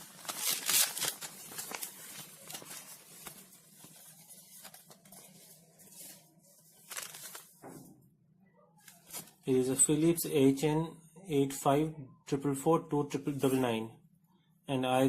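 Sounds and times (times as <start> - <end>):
packaging rustling and crinkling: 0.0 - 7.8, 8.8 - 9.4.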